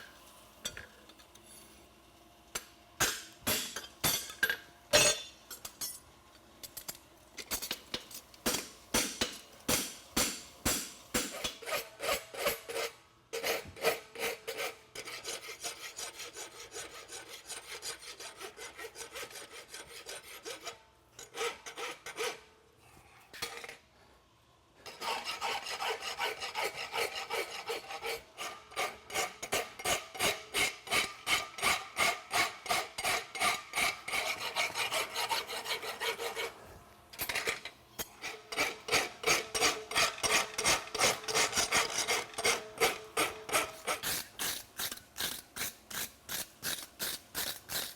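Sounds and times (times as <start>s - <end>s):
file scraping metal: 10.7s - 22.5s, 24.8s - 36.7s, 37.3s - 47.9s.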